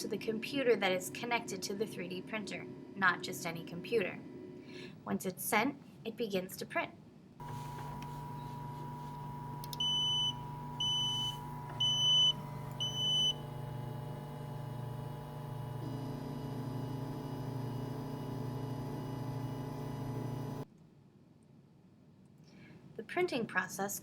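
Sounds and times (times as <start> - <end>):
printer fan and motor hum: 7.4 - 20.7.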